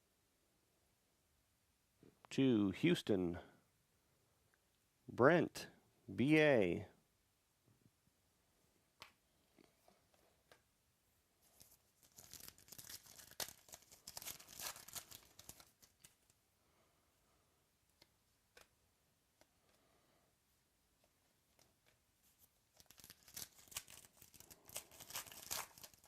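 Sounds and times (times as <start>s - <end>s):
foil wrapper tearing: 11.6s - 16.3s, 22.8s - 26.0s.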